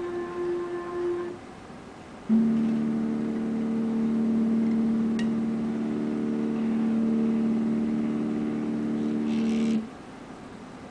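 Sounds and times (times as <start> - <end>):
electric motor humming: 2.3 - 9.9.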